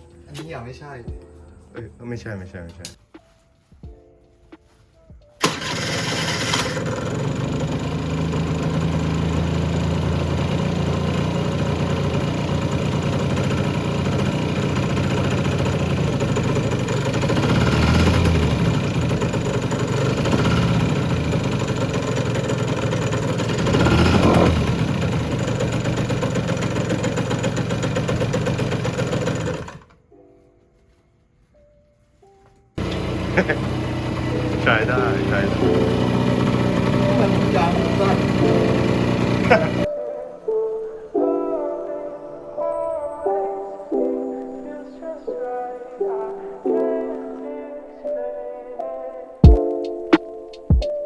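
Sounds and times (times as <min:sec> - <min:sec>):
two-stroke engine running and revving: 0:05.4 - 0:29.9, 0:32.8 - 0:39.9.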